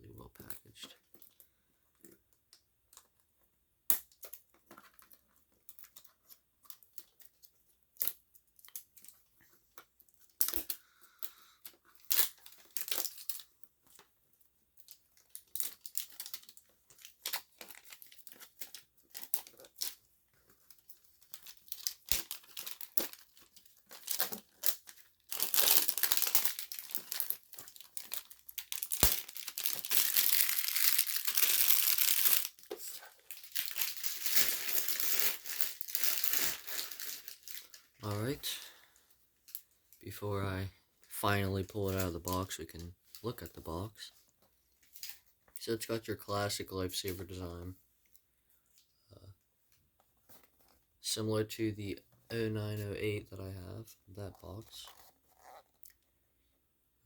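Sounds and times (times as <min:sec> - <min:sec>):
packaging crinkling: 0:14.8 - 0:20.0, 0:20.7 - 0:38.6
packaging being torn: 0:21.2 - 0:37.8.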